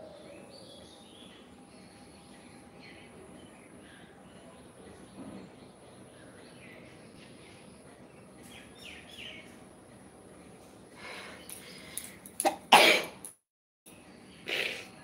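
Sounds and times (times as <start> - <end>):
outdoor background noise: 0.0 - 15.0
person sneezing: 12.4 - 13.2.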